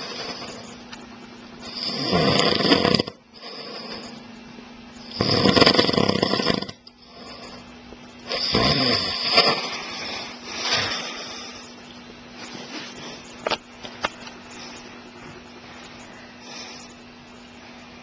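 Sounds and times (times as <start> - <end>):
man snoring: 0.0 - 0.6, 1.6 - 4.1, 5.0 - 11.6
quiet breathing: 3.3 - 4.3, 7.0 - 13.5, 14.2 - 18.0.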